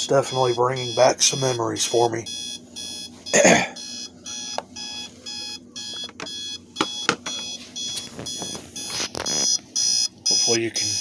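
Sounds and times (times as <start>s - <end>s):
alarm clock beeping: 0.0s - 11.0s.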